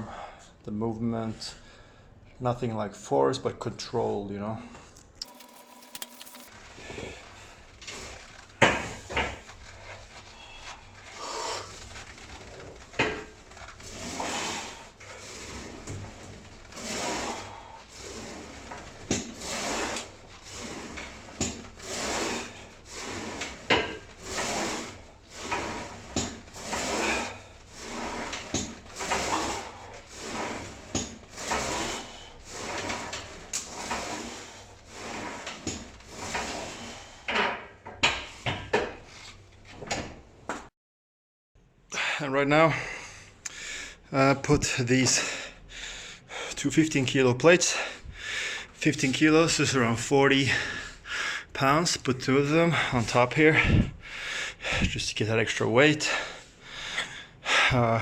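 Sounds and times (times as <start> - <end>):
leg press sled sliding on rails: 5.2 - 39.8.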